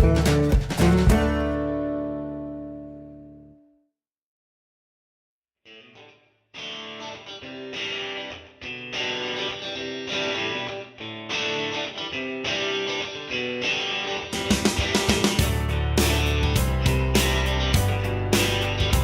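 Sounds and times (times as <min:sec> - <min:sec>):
drums: 0:00.0 - 0:01.7, 0:14.3 - 0:19.0
picked guitar: 0:00.0 - 0:03.7, 0:05.7 - 0:19.0.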